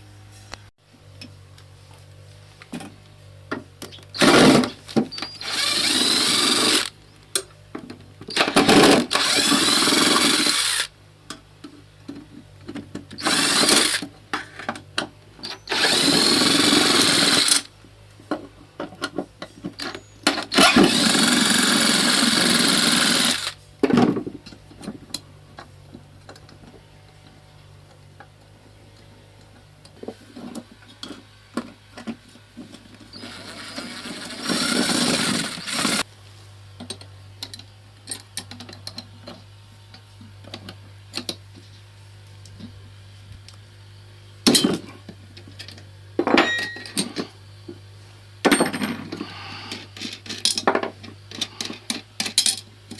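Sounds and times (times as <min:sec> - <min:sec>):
motor whine rising and falling: 0:05.4 - 0:06.9, 0:09.1 - 0:10.9, 0:33.1 - 0:36.0.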